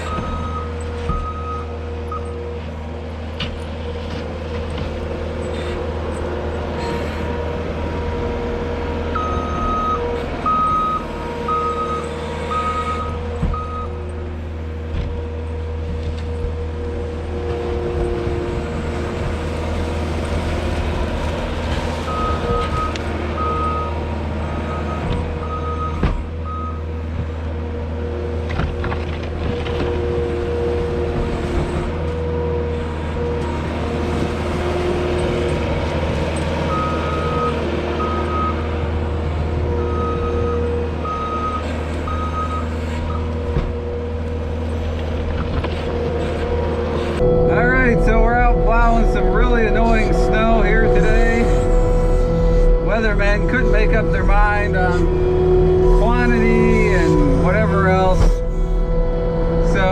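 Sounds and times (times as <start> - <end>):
diesel engine running: 0.0 - 59.9
backup alarm beeping: 47.2 - 59.9.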